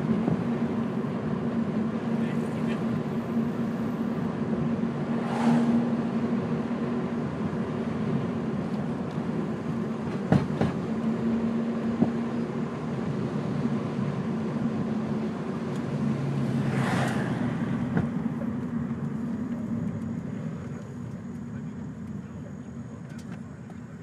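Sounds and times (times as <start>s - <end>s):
car engine and road noise: 0.0s - 24.0s
brief rushing sound: 5.1s - 6.3s.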